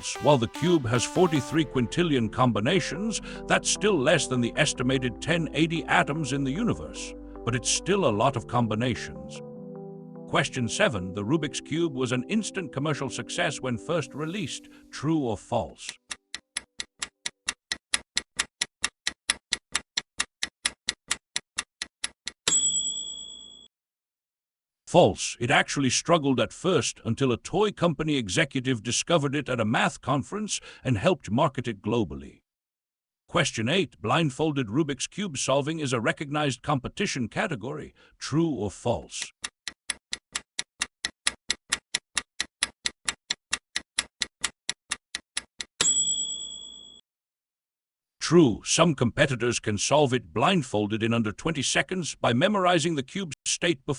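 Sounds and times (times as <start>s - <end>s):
clock ticking: 15.9s - 22.4s, 39.2s - 45.7s
bell ding: 22.5s - 23.6s, 45.8s - 47.0s.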